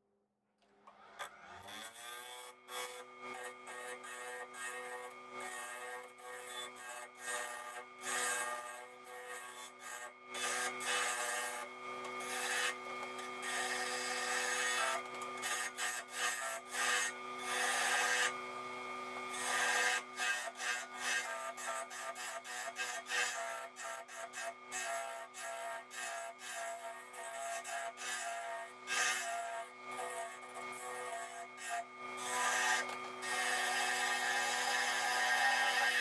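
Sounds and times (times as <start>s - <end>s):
turning tool scraping wood: 10.4s - 18.4s, 28.9s - 36.0s
wood lathe humming: 10.4s - 23.4s, 28.9s - 36.0s.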